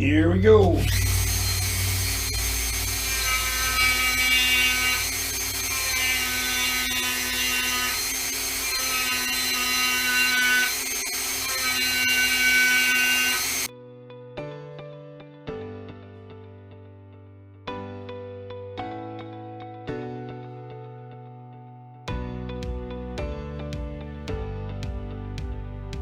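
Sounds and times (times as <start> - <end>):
power tool running on wood: 0.8 - 13.7.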